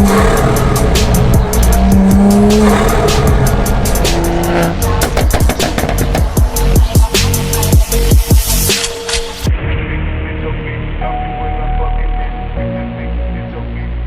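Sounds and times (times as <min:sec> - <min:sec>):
car engine running loud: 0:00.0 - 0:08.0
electronic music with fast beat: 0:00.0 - 0:09.6.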